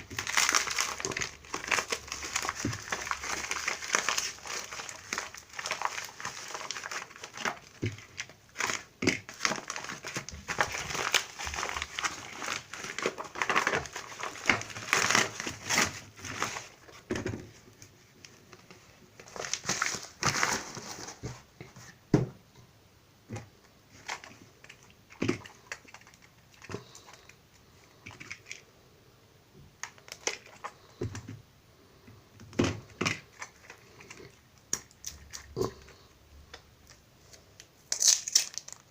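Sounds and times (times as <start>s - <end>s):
packaging crinkling: 0.0s - 21.4s, 29.8s - 31.0s, 32.8s - 38.9s.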